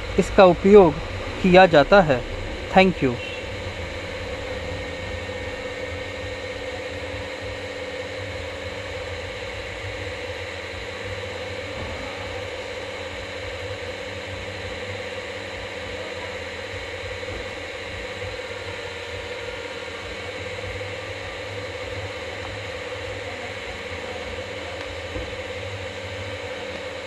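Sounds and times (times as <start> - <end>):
faint fluttering low rumble: 0.0 - 9.4
steady hum and hiss: 0.0 - 16.3.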